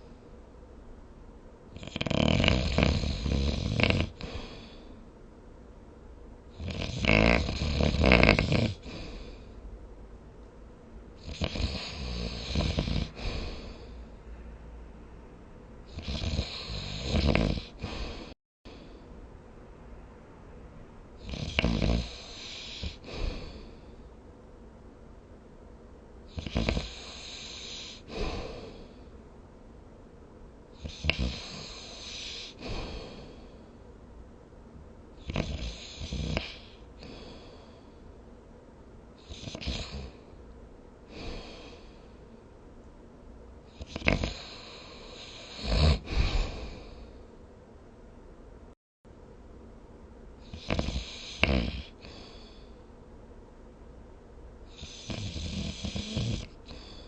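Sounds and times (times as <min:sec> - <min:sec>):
person snoring: 0:01.8 - 0:04.9, 0:06.6 - 0:09.5, 0:11.2 - 0:14.0, 0:15.9 - 0:19.0, 0:21.2 - 0:23.9, 0:26.3 - 0:29.0, 0:30.8 - 0:33.6, 0:35.2 - 0:37.8, 0:39.2 - 0:40.2, 0:41.1 - 0:42.1, 0:43.7 - 0:47.2, 0:50.4 - 0:52.7, 0:54.7 - 0:57.0.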